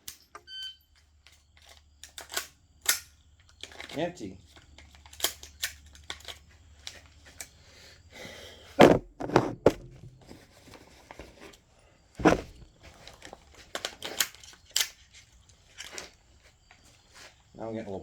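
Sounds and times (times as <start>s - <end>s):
rifle handling knocks and clicks: 1.0s - 7.5s, 8.8s - 10.4s, 12.2s - 16.2s.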